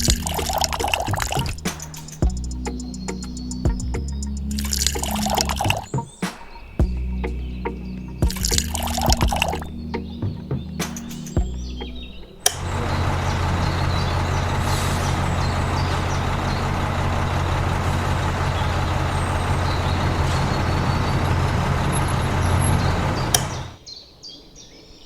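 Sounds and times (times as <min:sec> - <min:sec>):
machine humming and hissing: 0:06.8 - 0:23.8.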